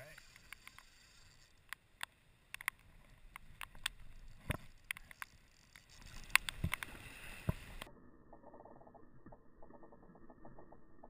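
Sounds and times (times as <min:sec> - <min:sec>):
faint hiss: 0:00.0 - 0:07.9
raindrops ticking on camera housing: 0:00.0 - 0:11.0.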